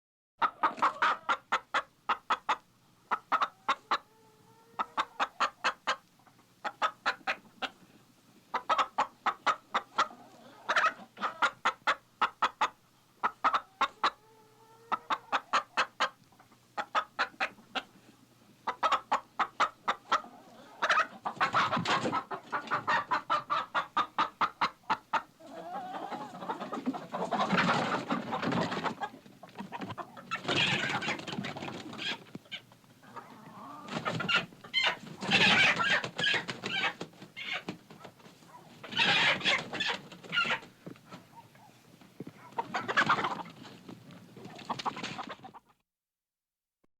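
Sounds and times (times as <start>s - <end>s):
chicken clucking: 0.4s - 7.9s, 8.5s - 45.8s.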